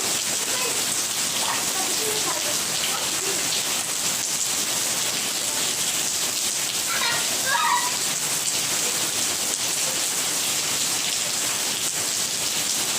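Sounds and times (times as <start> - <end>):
heavy rain hissing: 0.0 - 12.9
faint children's voices: 0.2 - 3.7, 5.2 - 5.9, 6.8 - 8.1, 8.7 - 10.2.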